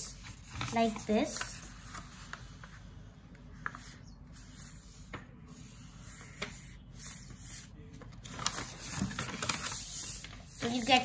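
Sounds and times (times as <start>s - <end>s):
paper being folded: 0.1s - 2.8s, 7.0s - 11.0s.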